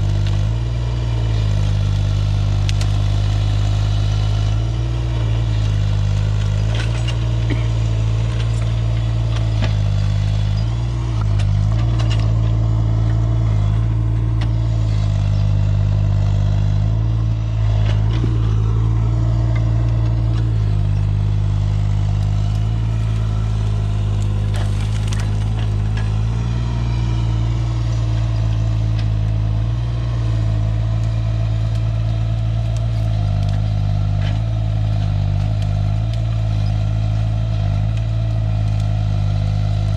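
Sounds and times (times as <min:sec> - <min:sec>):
earthmoving machine engine running: 0:00.0 - 0:39.9
knocks and scrapes: 0:22.9 - 0:26.2.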